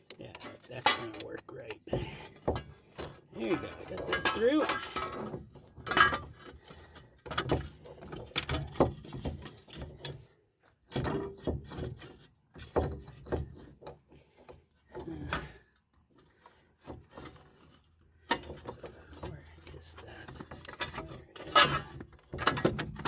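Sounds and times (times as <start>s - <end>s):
metal parts knocking and clinking: 0.0s - 10.2s, 18.2s - 23.0s.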